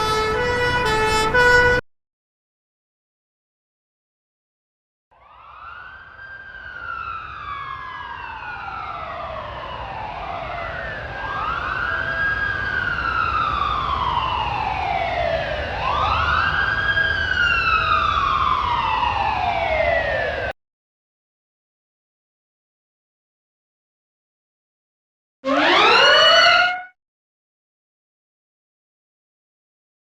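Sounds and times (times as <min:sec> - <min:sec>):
siren wailing: 0:00.0 - 0:01.8, 0:05.2 - 0:20.5, 0:25.4 - 0:27.0.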